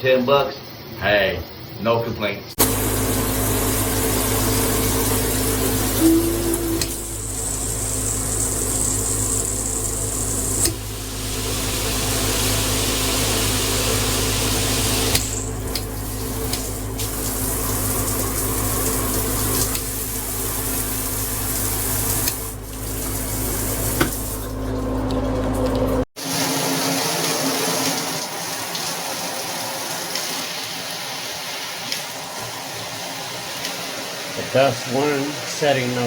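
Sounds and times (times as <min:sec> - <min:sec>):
shower spray hissing: 0:02.6 - 0:24.5.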